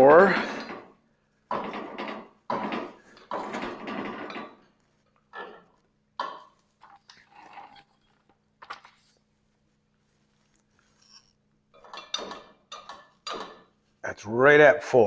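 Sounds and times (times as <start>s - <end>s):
metallic clattering and scraping: 6.8s - 9.2s.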